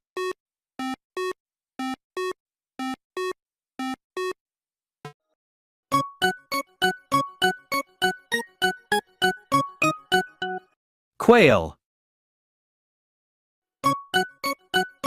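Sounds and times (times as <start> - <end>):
plucked keyboard bouncy tune: 5.9 - 10.8, 13.8 - 15.0.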